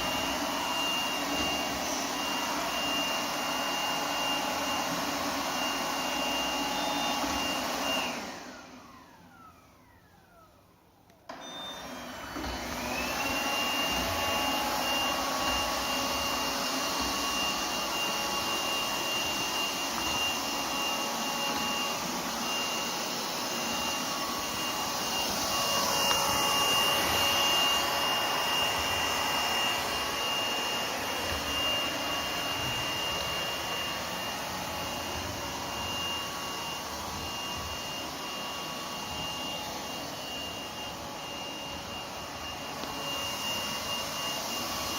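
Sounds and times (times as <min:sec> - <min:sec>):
robot vacuum whirring with high whine: 0:00.0 - 0:44.9.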